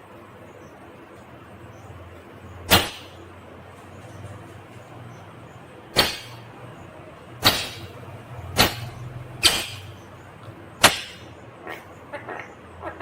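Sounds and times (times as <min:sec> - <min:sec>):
parakeet screeching: 0:11.6 - 0:13.0.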